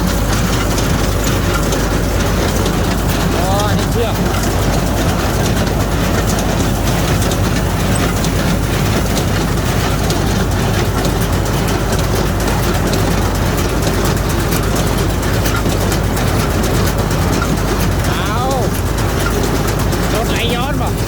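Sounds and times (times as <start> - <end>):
baling machinery clattering: 0.0 - 21.0
engine hum: 0.0 - 21.0.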